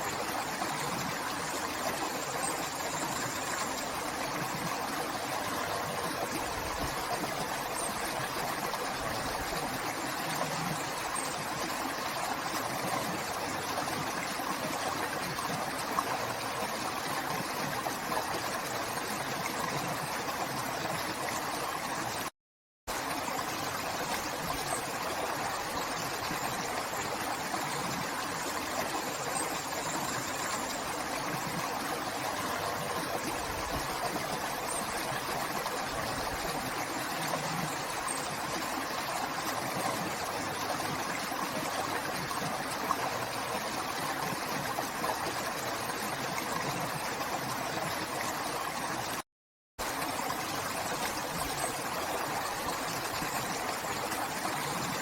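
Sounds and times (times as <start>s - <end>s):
river water flowing: 0.0s - 22.3s, 22.9s - 49.2s, 49.8s - 55.0s.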